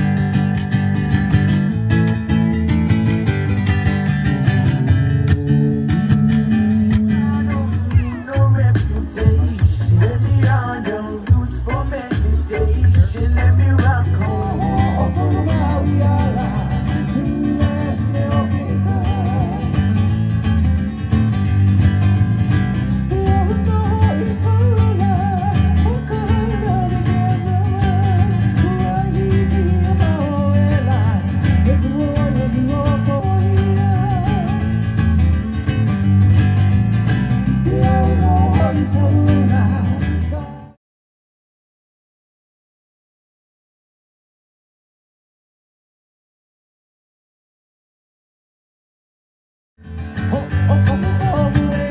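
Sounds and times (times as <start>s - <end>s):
strummed acoustic guitar: 0.0s - 40.7s, 49.8s - 51.9s
steady bass line: 0.0s - 40.8s, 49.8s - 51.9s
person singing: 5.2s - 19.9s, 23.0s - 34.8s, 37.5s - 40.8s, 50.2s - 51.9s.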